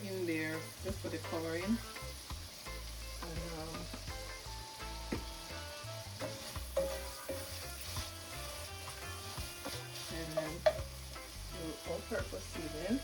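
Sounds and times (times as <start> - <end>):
vegetables sizzling in oil: 0.0 - 13.0
spoon knocking against pot: 6.7 - 7.6, 10.3 - 10.9.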